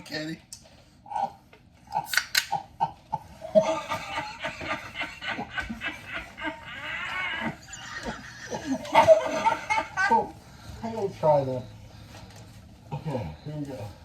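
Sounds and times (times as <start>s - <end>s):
people laughing: 2.8s - 10.5s.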